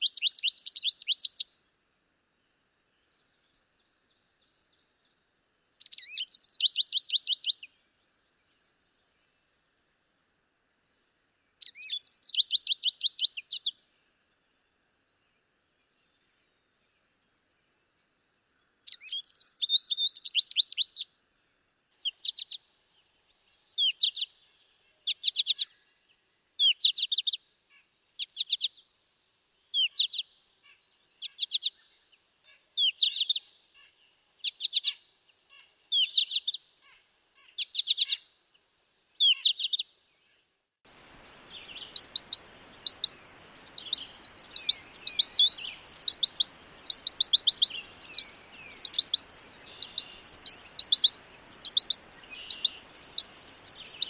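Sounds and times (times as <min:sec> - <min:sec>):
faint hiss: 0:00.0 - 0:54.0
goldfinch calling: 0:05.8 - 0:07.6, 0:11.6 - 0:13.7, 0:18.9 - 0:21.0, 0:22.0 - 0:22.6, 0:23.8 - 0:24.3, 0:26.6 - 0:27.4, 0:29.8 - 0:30.3, 0:32.8 - 0:33.4, 0:35.9 - 0:36.6, 0:39.2 - 0:39.9, 0:41.1 - 0:54.0.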